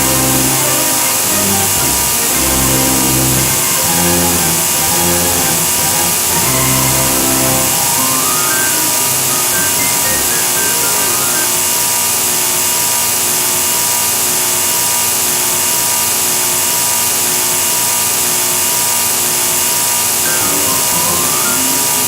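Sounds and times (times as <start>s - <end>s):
harsh distorted hiss with tones: 0.0s - 22.0s.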